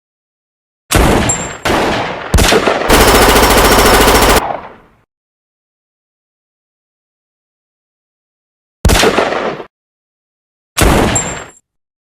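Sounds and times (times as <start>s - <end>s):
rapid automatic gunfire: 2.5s - 4.6s.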